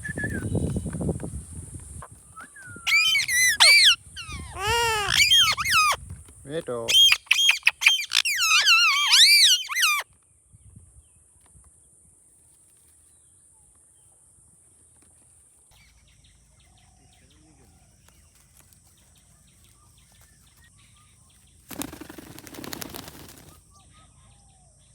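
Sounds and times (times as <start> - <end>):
parrot warbling calls: 2.9 - 6.0, 6.9 - 10.0.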